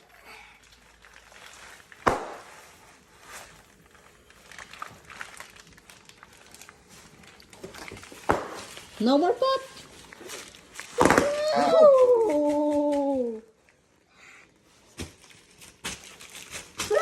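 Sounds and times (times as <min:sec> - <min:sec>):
bubble wrap crinkling: 0:00.0 - 0:13.9, 0:14.6 - 0:17.0
bubble wrap popping: 0:00.1 - 0:13.4, 0:14.8 - 0:17.0.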